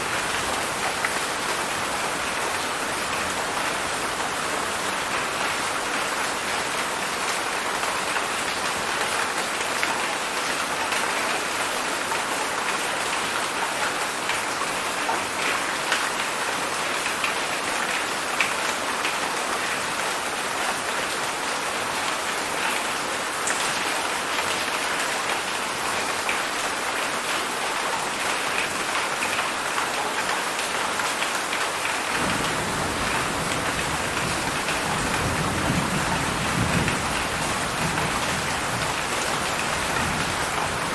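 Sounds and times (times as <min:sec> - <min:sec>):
heavy rain pouring: 0:00.0 - 0:40.9
low rumble of thunder: 0:32.2 - 0:39.0.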